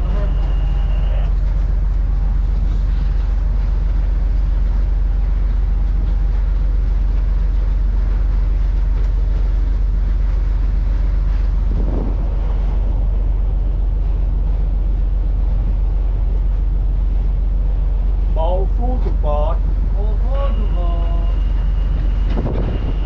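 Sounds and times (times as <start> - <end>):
ship engine drone: 0.0 - 23.0
wind buffeting microphone: 9.3 - 18.3, 21.4 - 23.0.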